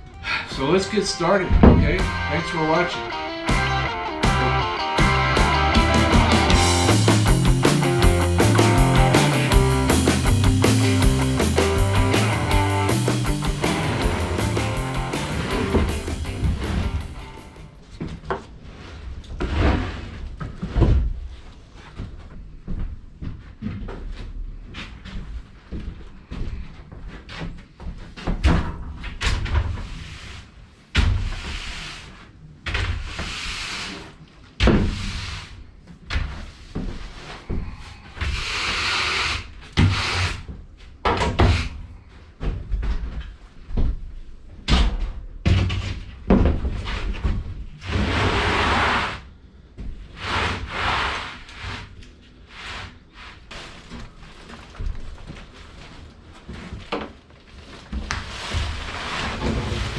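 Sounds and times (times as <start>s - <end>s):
noisy bursts: 0.5s - 17.7s.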